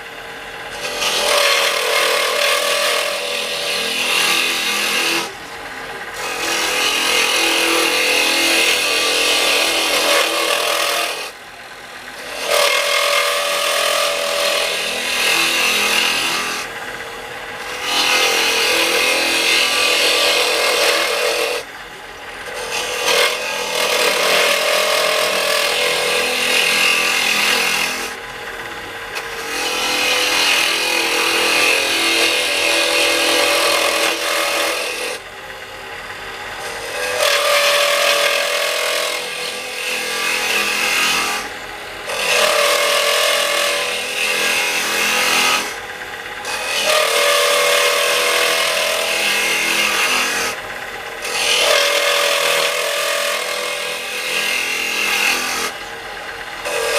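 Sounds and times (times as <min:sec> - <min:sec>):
wood lathe running: 0:00.0 - 0:56.9
turning tool scraping wood: 0:00.7 - 0:05.3, 0:06.2 - 0:11.3, 0:12.2 - 0:16.7, 0:17.7 - 0:21.7, 0:22.4 - 0:28.2, 0:29.2 - 0:35.2, 0:36.6 - 0:41.4, 0:51.2 - 0:55.7.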